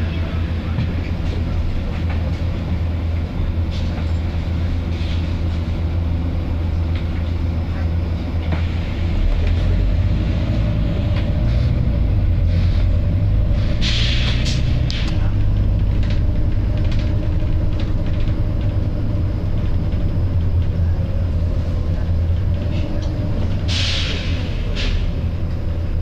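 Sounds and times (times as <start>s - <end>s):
buses idling: 0.0s - 26.0s
air hissing: 13.8s - 15.1s, 23.6s - 25.1s.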